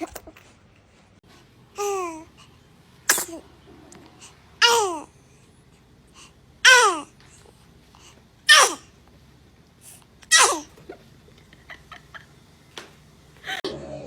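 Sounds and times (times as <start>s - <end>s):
baby sneezing: 3.1s - 3.4s, 4.6s - 5.1s, 6.7s - 7.1s, 8.5s - 8.9s, 10.3s - 10.7s.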